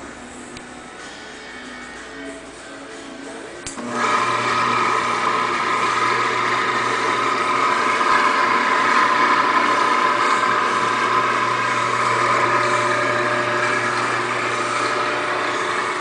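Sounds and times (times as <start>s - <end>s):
electric gate motor whining: 3.8s - 16.0s.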